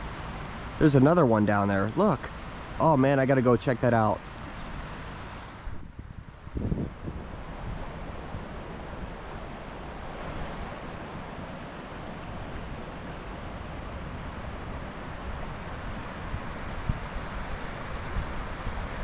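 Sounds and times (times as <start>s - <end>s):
river water rushing: 0.0s - 19.0s
wind rumble on microphone: 4.8s - 19.0s.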